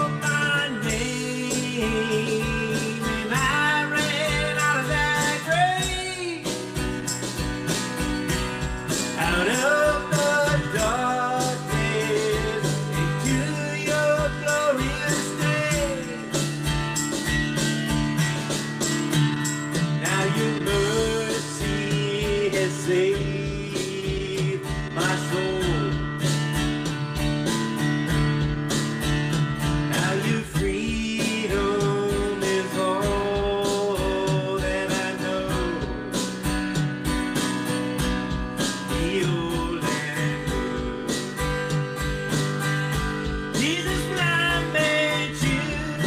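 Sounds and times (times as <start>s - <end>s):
man singing: 0.0s - 6.8s, 9.2s - 16.6s, 20.0s - 26.4s, 29.9s - 36.4s, 38.6s - 41.7s, 43.5s - 46.0s
acoustic guitar strumming: 0.0s - 46.0s.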